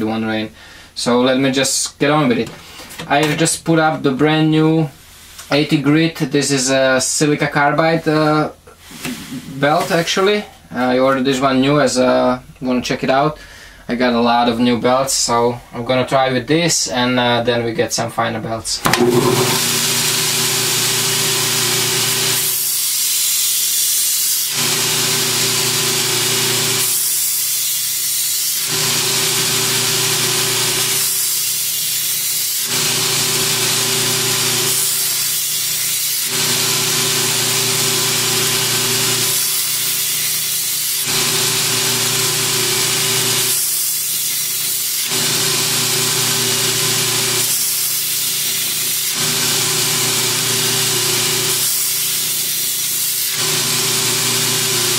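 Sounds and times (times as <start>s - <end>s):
belt grinder motor hum: 18.9s - 54.9s
blade grinding hiss: 19.2s - 45.7s, 46.4s - 54.9s.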